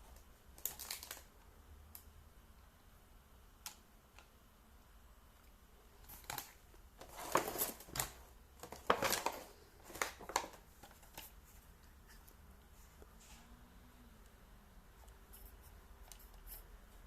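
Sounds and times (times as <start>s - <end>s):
packaging rustling: 0.6s - 1.3s, 6.0s - 11.6s.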